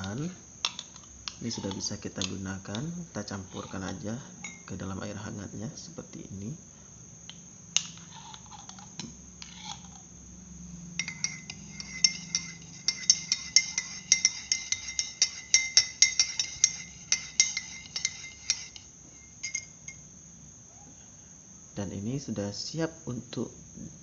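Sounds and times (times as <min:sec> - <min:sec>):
spoon clinking in a glass: 0:00.0 - 0:02.8, 0:03.5 - 0:04.7, 0:11.0 - 0:20.0.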